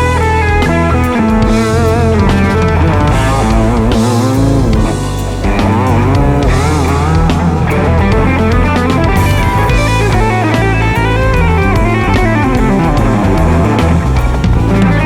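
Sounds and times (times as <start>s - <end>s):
bass guitar: 0.0s - 15.0s
drum kit: 0.0s - 15.0s
electric guitar lead: 0.0s - 15.0s.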